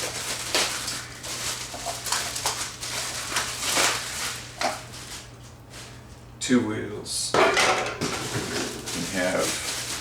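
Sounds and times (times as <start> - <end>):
packing material rustling: 0.0 - 5.9, 8.2 - 10.0.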